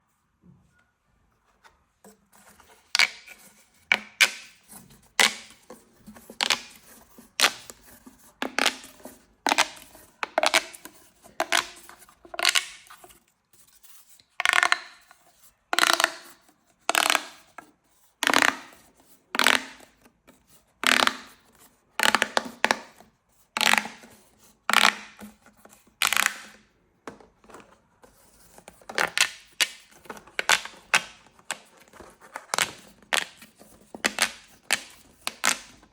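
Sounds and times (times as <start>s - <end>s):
plastic pop tubes crackling: 2.8s - 13.0s, 14.4s - 15.1s, 15.8s - 17.6s, 18.2s - 20.0s, 20.8s - 21.4s, 22.0s - 23.0s, 23.6s - 24.1s, 24.7s - 25.4s, 26.0s - 27.5s, 28.6s - 35.9s.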